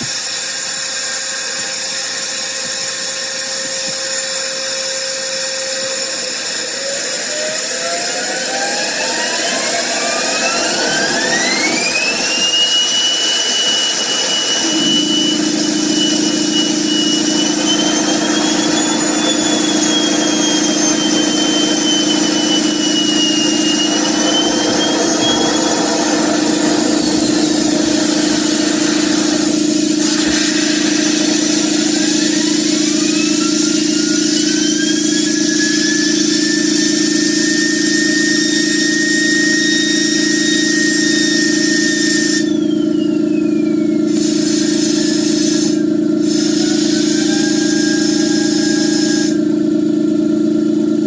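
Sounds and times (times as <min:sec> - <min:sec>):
jet turbine whine: 0:00.0 - 0:51.0
steady low hum: 0:02.8 - 0:34.8.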